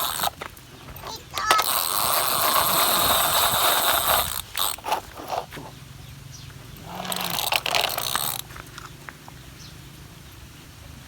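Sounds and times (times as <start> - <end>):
toy electric motor whirring: 0.0 - 0.4, 1.0 - 5.5, 6.8 - 8.5.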